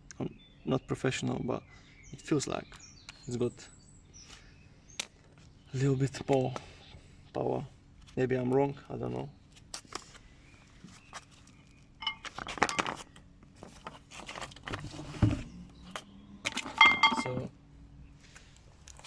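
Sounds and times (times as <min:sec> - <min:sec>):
metal objects clinking: 0:12.0 - 0:13.0, 0:16.5 - 0:17.5.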